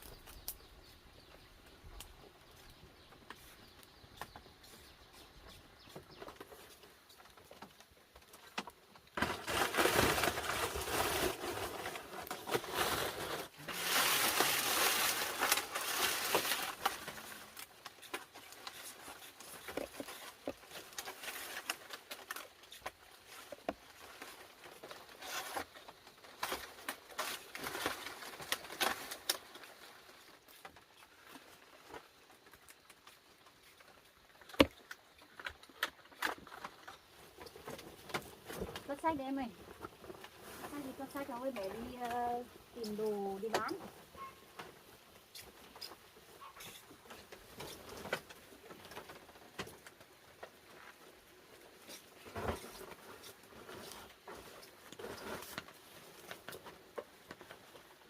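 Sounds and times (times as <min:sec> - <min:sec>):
rustling and crackling: 0:00.0 - 0:58.0.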